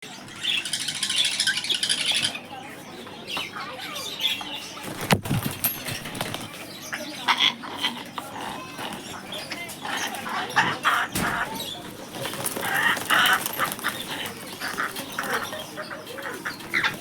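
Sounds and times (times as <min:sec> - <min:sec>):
parrot flapping wings: 0:04.9 - 0:06.5.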